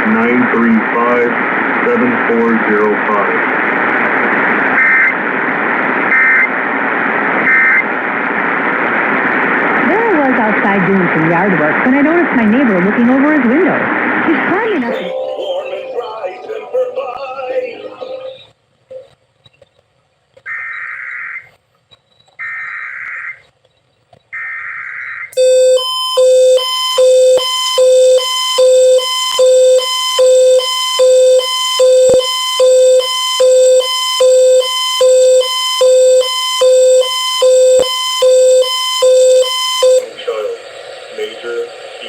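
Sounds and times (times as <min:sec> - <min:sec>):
pulsing alert attention signal: 0:14.8 - 0:18.4.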